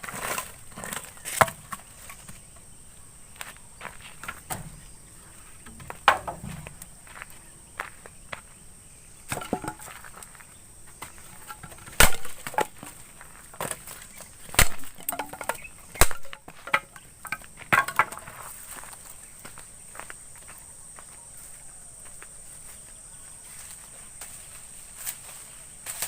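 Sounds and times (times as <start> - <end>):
high insect drone: 0.0 - 26.0
sharp woody snaps and knocks: 11.4 - 13.0, 13.6 - 18.2.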